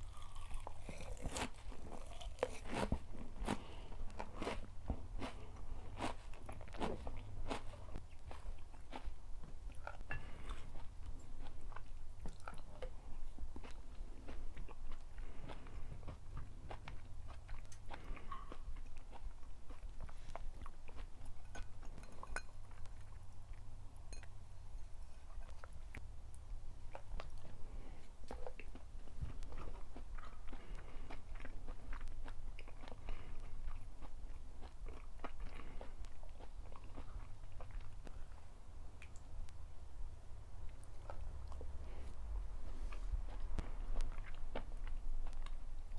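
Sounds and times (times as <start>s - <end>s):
person chewing and biting food: 0.0s - 23.3s, 28.3s - 39.2s, 42.9s - 45.9s
low steady hum: 0.0s - 45.9s.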